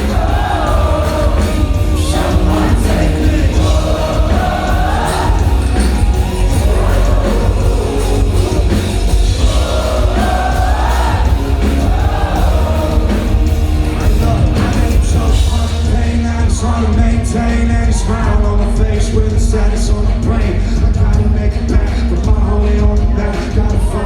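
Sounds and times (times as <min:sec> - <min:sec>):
heavy bass: 0:00.0 - 0:24.0
live rock band playing: 0:00.0 - 0:24.0
voices singing: 0:00.0 - 0:24.0.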